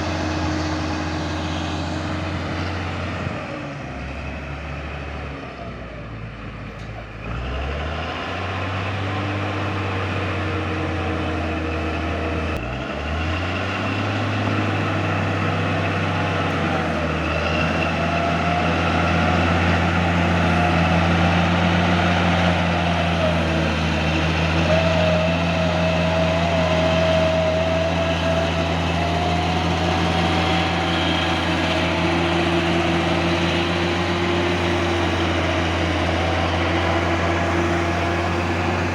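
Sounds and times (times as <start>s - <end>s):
bulldozer diesel engine under load: 0.0s - 38.9s.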